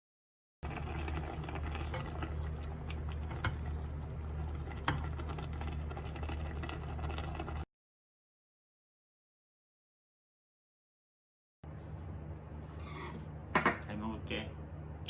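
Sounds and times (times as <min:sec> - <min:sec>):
steady low hum: 0:00.6 - 0:07.6.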